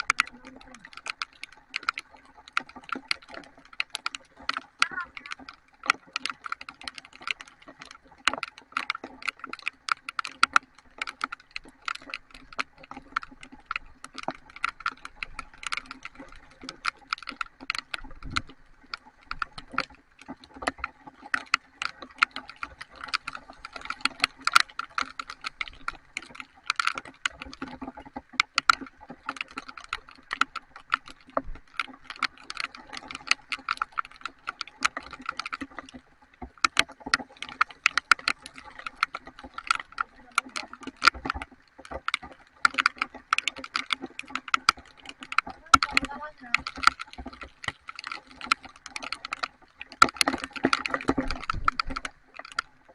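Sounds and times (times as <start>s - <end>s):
raindrops tapping a hard surface: 0.0s - 52.9s
heavy rain: 4.8s - 5.6s, 45.1s - 47.3s.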